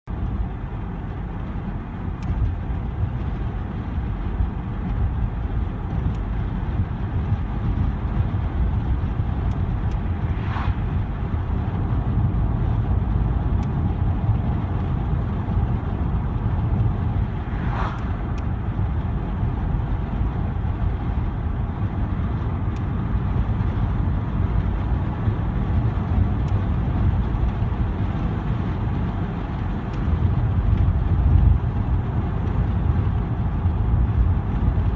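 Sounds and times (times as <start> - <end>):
road and wind rumble: 0.0 - 34.9
vehicle passing whoosh: 9.6 - 12.6, 16.8 - 20.3.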